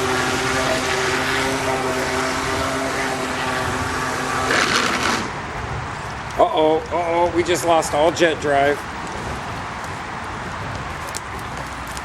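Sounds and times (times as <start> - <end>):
short burst of noise: 0.0 - 5.5
jet boat motor whining: 0.0 - 12.0
rushing water: 0.0 - 12.0.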